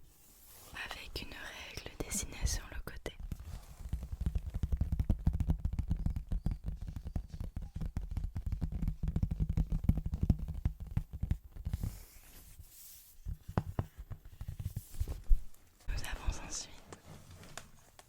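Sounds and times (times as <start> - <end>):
fingertips tapping on notepad: 3.3 - 12.1, 13.2 - 15.1.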